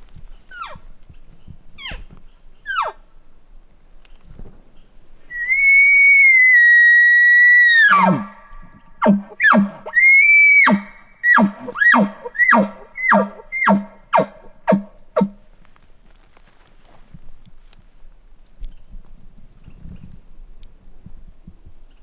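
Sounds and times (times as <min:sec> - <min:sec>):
elk bugling: 0:05.3 - 0:15.4.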